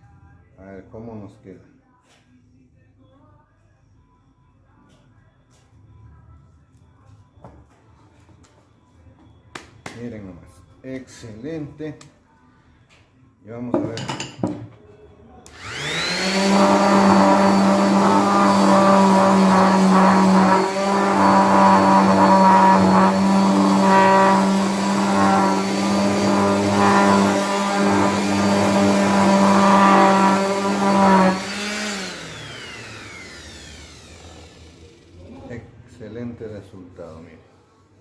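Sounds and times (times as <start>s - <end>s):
orbital sander whining: 15.5s - 35.2s.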